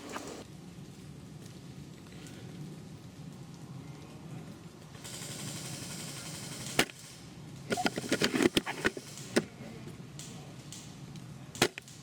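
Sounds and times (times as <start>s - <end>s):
airsoft rifle mechanism clicking: 7.7s - 9.5s, 11.5s - 12.0s
rifle handling clatter: 7.7s - 9.5s, 11.6s - 12.0s.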